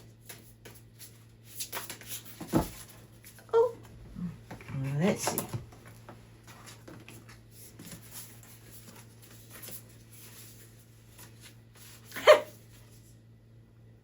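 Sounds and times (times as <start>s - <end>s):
cards rustling and shuffling: 0.0s - 3.4s, 5.4s - 13.2s.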